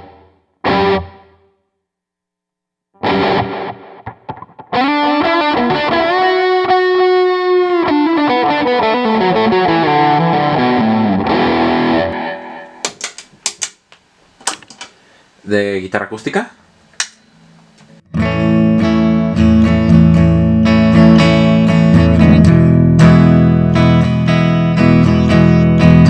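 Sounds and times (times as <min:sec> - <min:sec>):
distorted electric guitar: 0:00.0 - 0:01.4, 0:03.0 - 0:12.9, 0:18.0 - 0:26.0.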